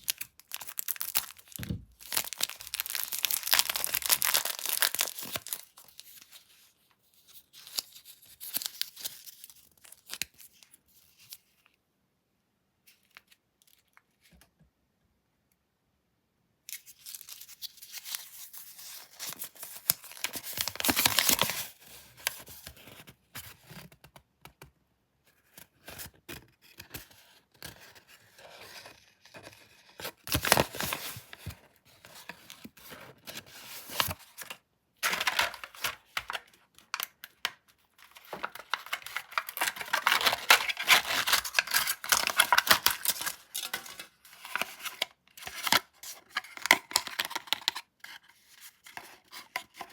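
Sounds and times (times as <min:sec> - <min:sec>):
candy wrappers tearing and rustling: 0:00.0 - 0:06.4, 0:07.4 - 0:11.3, 0:16.7 - 0:21.8, 0:35.0 - 0:47.8.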